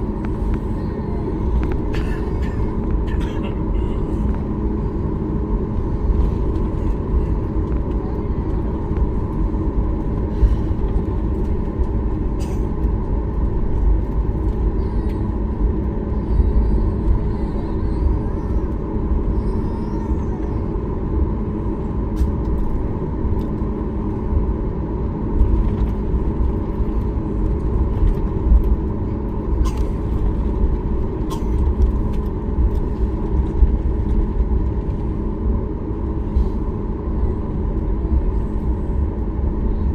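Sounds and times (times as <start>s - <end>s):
airplane cabin rumble: 0.0s - 39.9s.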